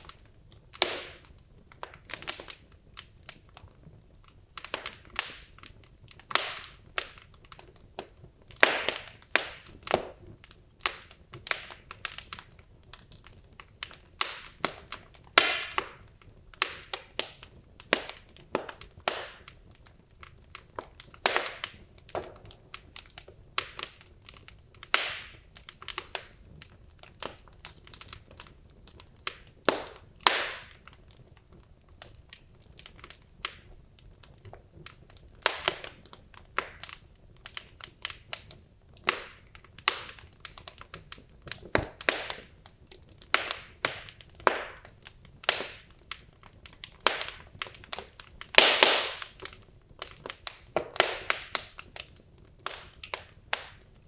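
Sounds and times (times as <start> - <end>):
logs crackling in fireplace: 0.0 - 54.0.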